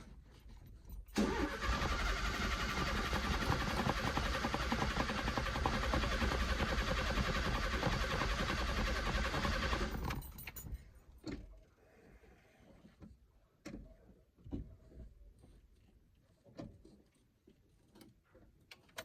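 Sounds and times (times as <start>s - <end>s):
engine cranking by starter motor: 1.1s - 10.4s.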